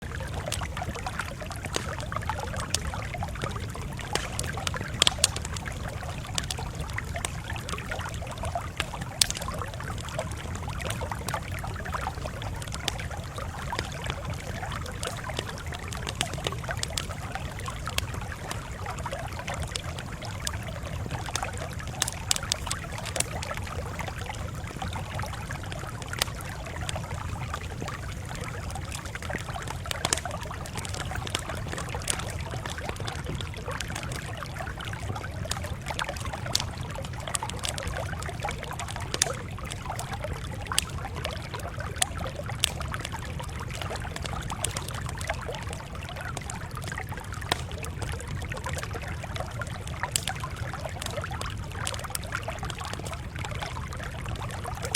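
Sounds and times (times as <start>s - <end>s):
wood fire crackling: 0.0s - 54.9s
sharp pops: 4.0s - 6.6s.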